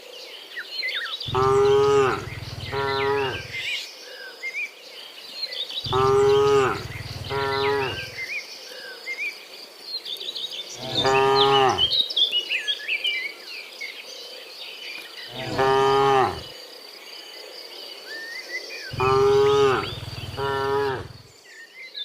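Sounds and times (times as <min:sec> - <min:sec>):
cows mooing: 0:01.3 - 0:03.7, 0:05.9 - 0:08.2, 0:10.8 - 0:12.0, 0:15.3 - 0:16.5, 0:18.9 - 0:21.3.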